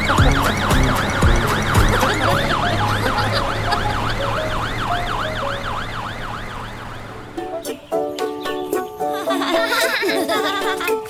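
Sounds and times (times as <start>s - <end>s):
fire engine siren yelping: 0.0s - 7.6s.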